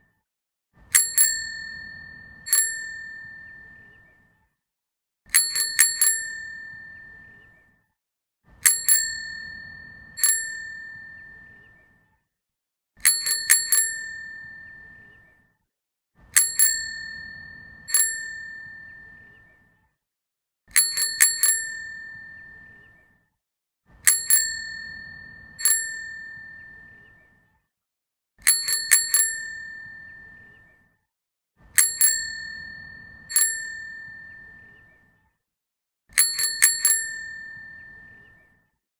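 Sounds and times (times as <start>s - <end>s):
bicycle bell ringing: 0.9s - 4.0s, 5.3s - 7.3s, 8.6s - 11.6s, 13.0s - 15.0s, 16.4s - 19.3s, 20.7s - 22.8s, 24.0s - 27.0s, 28.4s - 30.5s, 31.8s - 34.8s, 36.2s - 38.2s.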